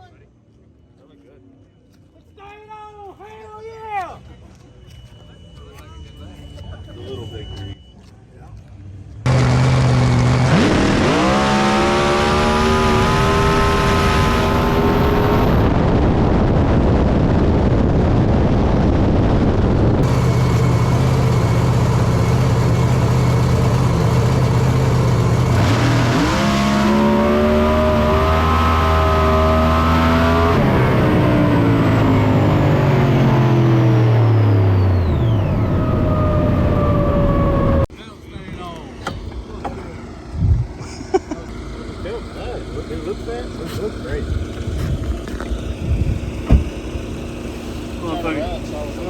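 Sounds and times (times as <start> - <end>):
drag car engine at full throttle: 9.3 - 37.9, 38.5 - 49.0.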